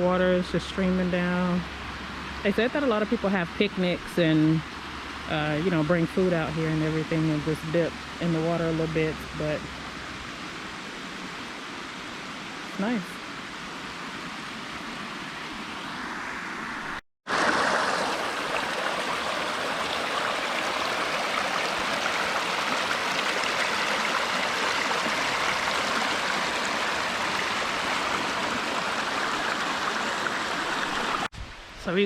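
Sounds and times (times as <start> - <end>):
water rushing down waterfall: 17.3 - 31.3.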